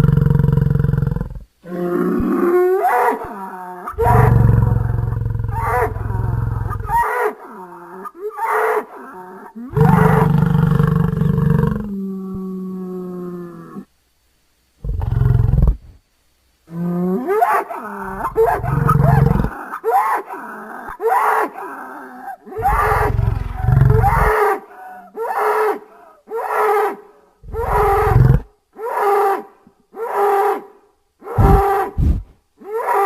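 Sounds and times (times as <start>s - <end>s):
buffalo bellowing and roaring: 1.7s - 13.9s, 16.7s - 20.2s, 20.9s - 29.4s, 31.3s - 33.0s.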